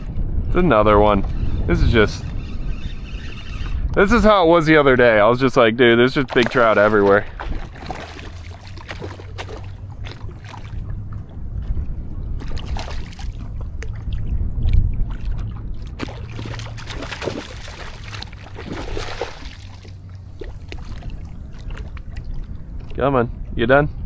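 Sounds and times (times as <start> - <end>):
wind rumble on microphone: 0.0 - 24.0
small water splashes: 6.1 - 23.0.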